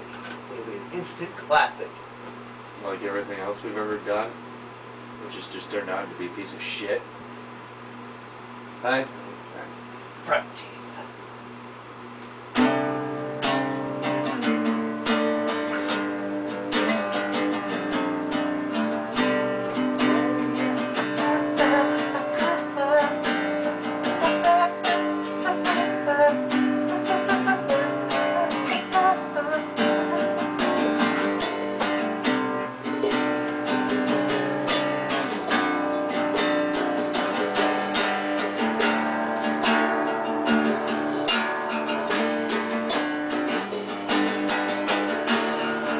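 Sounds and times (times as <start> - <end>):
acoustic guitar strumming: 12.3 - 45.9.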